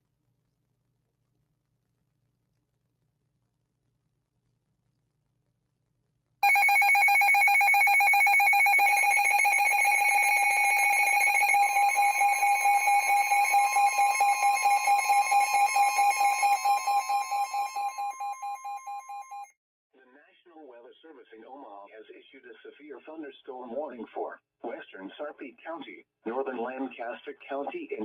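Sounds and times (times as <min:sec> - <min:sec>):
electronic alert tone: 0:06.4 - 0:19.4.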